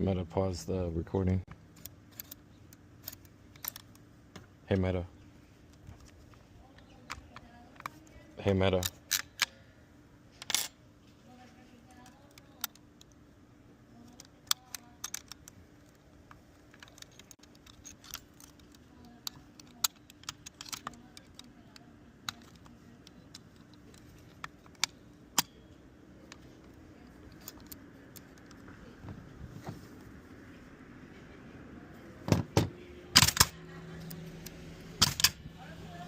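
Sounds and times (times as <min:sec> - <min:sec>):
keys and lock parts clicking: 0:01.7 - 0:04.0, 0:05.7 - 0:09.6, 0:10.4 - 0:10.8, 0:11.9 - 0:13.2, 0:14.0 - 0:28.7, 0:33.1 - 0:35.4.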